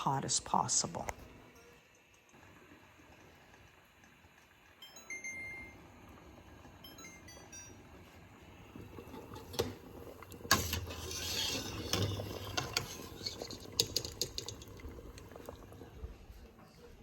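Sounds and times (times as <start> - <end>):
kitchen clicks and clinks: 10.5 - 14.9.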